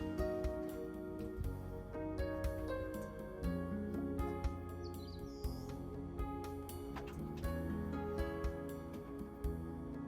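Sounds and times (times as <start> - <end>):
background music with soft beat: 0.0 - 10.0.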